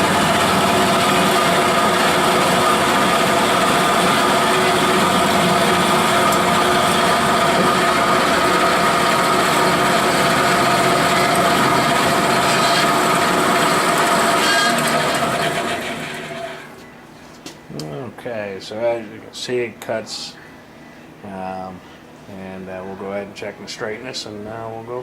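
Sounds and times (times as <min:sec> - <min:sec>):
bandsaw cutting steel tubing: 0:00.0 - 0:16.7.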